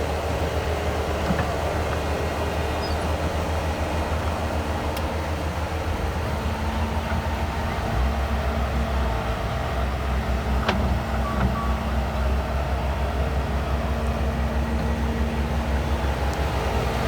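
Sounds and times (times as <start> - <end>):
loader engine running: 0.0 - 17.0.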